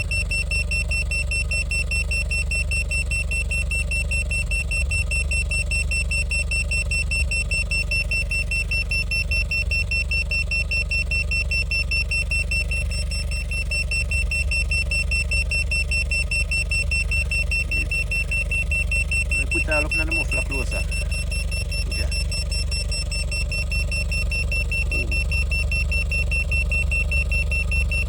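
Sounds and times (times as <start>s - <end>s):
car engine idling: 0.0s - 28.0s
rapid high-pitched alarm beeping: 0.0s - 28.0s.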